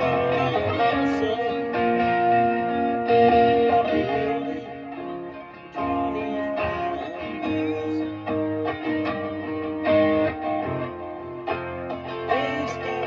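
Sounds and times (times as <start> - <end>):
electric guitar chords strummed: 0.0 - 13.0.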